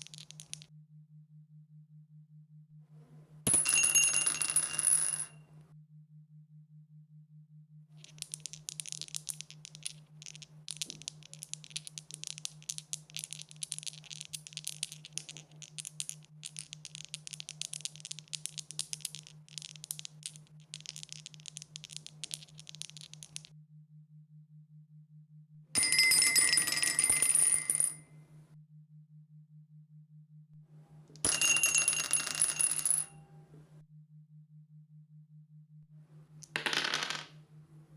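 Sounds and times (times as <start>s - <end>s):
dice rattling: 0.0s - 0.7s, 8.0s - 23.5s, 36.4s - 37.4s.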